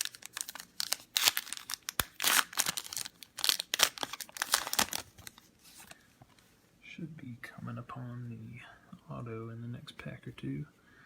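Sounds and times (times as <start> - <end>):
wrapper tearing and crinkling: 0.0 - 6.0.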